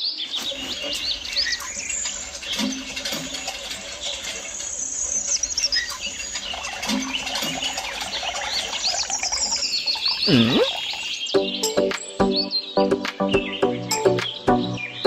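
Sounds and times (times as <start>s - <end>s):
birds chirping and twittering: 0.0s - 15.0s
music: 11.3s - 15.0s.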